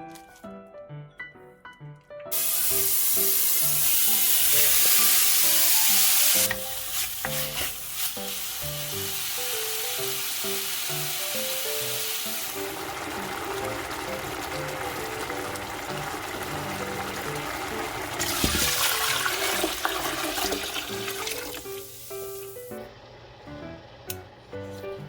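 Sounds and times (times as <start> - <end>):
soft melodic background tune: 0.0 - 6.8
food sizzling in a pan: 2.3 - 22.8.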